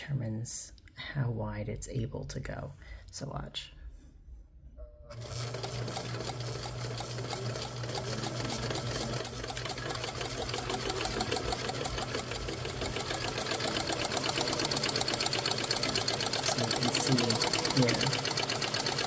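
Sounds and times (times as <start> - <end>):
sewing machine running: 5.1 - 19.0.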